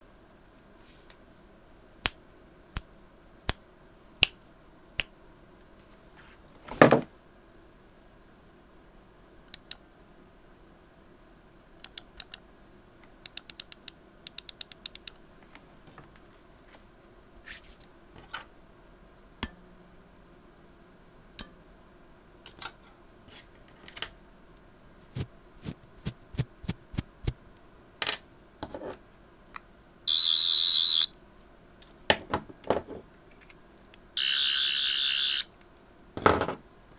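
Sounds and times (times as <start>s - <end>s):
loud buzz: 30.1s - 31.1s, 34.2s - 35.5s.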